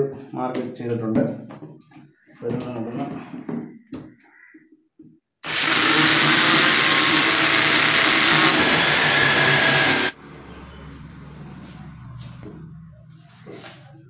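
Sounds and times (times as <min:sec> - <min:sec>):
electric drill boring wood: 0:05.4 - 0:10.2.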